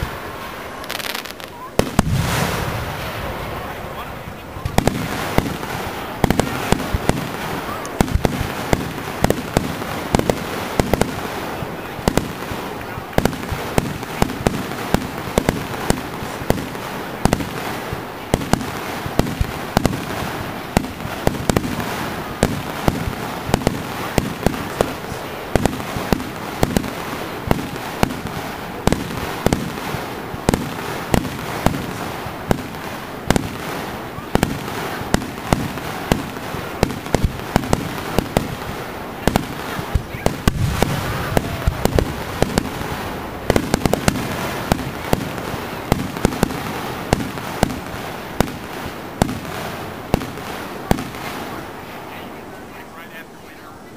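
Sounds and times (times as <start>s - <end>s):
steady hiss: 0.0s - 53.9s
aerial firework shells bursting: 0.8s - 3.7s, 12.1s - 51.1s.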